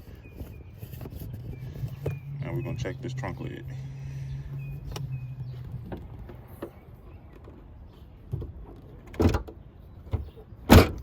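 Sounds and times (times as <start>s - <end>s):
trunk lid and latch clunking: 4.8s - 11.0s.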